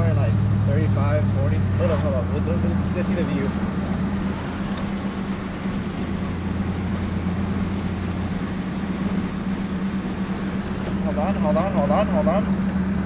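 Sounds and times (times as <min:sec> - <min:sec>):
car engine drone: 0:00.0 - 0:13.0
constant low hum: 0:00.0 - 0:13.0
road noise: 0:00.0 - 0:13.0.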